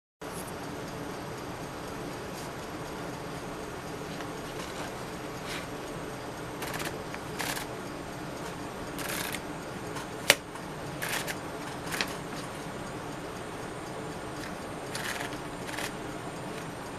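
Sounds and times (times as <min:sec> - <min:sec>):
manual typewriter rattling: 0:06.6 - 0:07.7, 0:09.0 - 0:09.4, 0:11.0 - 0:12.5, 0:14.4 - 0:16.0
sharp typewriter click: 0:06.6 - 0:07.7, 0:09.0 - 0:09.4, 0:10.2 - 0:12.2, 0:14.4 - 0:16.1.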